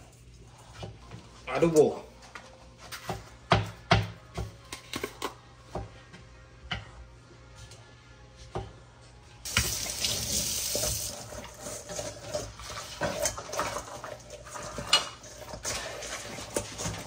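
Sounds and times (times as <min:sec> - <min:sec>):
water running into sink: 0:09.5 - 0:14.5.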